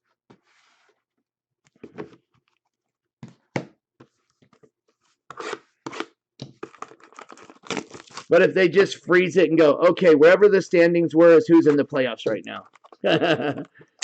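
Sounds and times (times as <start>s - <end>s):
cards sliding and rubbing: 0.3s - 1.0s.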